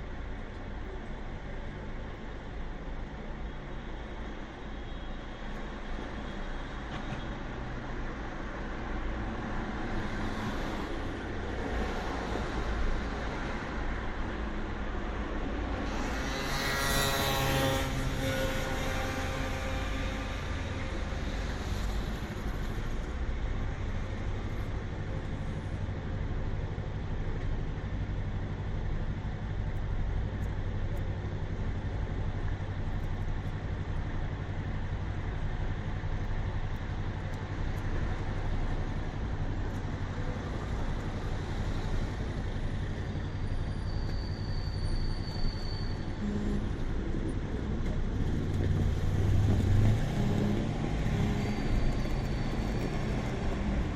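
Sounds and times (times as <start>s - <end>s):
traffic rumble: 0.0s - 53.9s
vehicle approaching: 46.1s - 53.9s.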